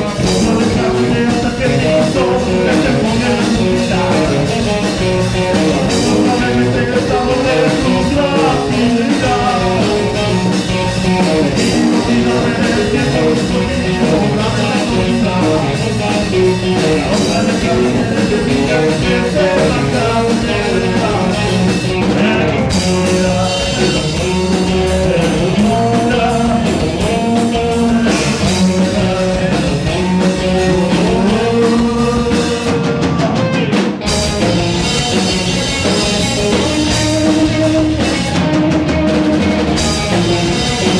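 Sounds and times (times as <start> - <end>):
person singing: 0.0 - 34.0
rock band playing live: 0.0 - 40.9.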